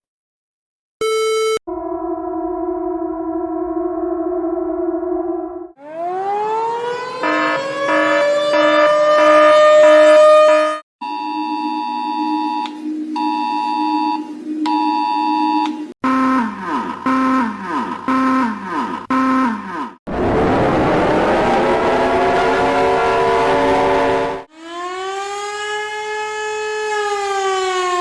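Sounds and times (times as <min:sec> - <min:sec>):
short falling tones: 0:01.6 - 0:06.8
siren wail: 0:01.7 - 0:15.4, 0:20.1 - 0:28.0.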